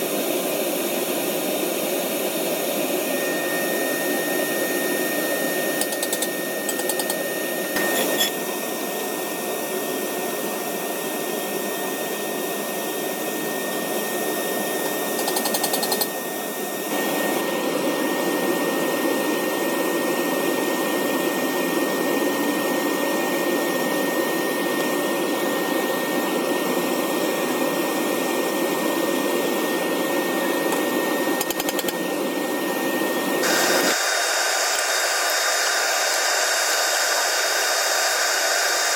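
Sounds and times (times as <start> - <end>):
thin steady whine: 2.5 - 8.8
furnace burner rushing: 30.4 - 38.9.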